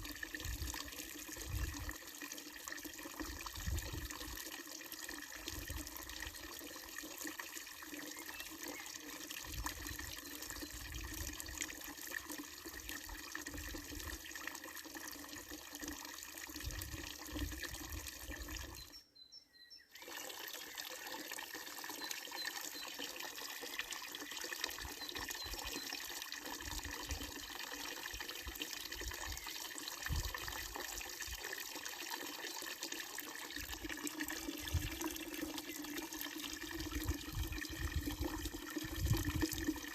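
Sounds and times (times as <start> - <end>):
fountain water splashing into basin: 0.0 - 18.9, 20.0 - 39.9.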